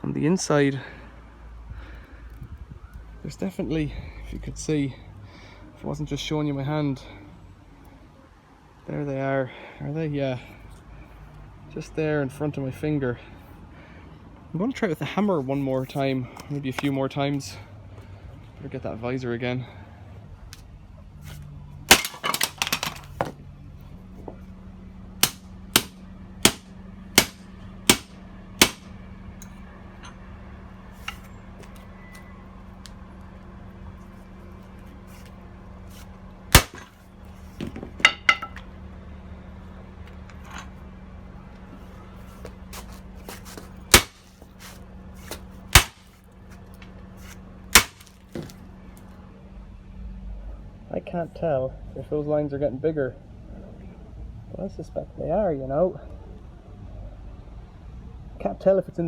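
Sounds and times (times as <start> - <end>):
sledgehammer striking steel lock: 21.9 - 23.1, 25.2 - 28.9, 36.6 - 37.0, 43.9 - 44.3, 45.8 - 46.1, 47.8 - 48.5.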